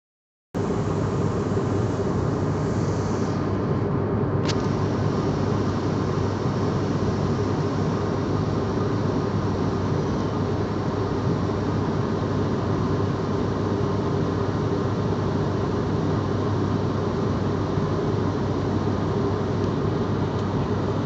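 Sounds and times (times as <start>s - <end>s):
airliner cabin engine noise: 0.6s - 21.0s
short click: 4.4s - 4.8s.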